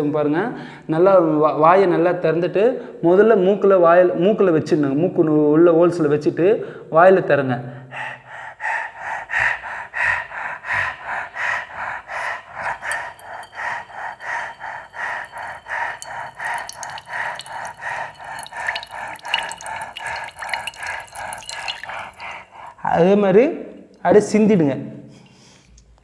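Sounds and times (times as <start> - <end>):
quick breaths through mouth: 7.8 - 22.8
water dripping and trickling: 12.5 - 22.7.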